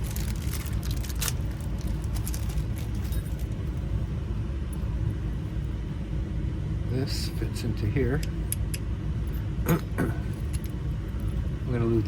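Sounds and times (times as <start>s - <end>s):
steady low rumble: 0.0s - 12.0s
light clicks of metal lock parts: 8.1s - 10.8s.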